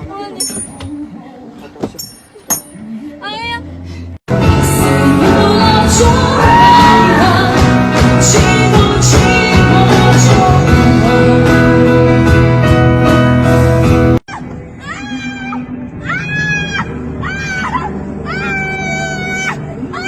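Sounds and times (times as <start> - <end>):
pop song with singing: 4.3 - 13.6.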